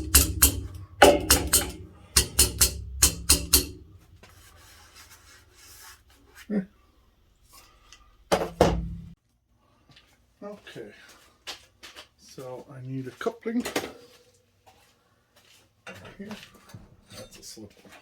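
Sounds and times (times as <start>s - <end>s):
music with drum beat and bass: 0.0s - 4.2s.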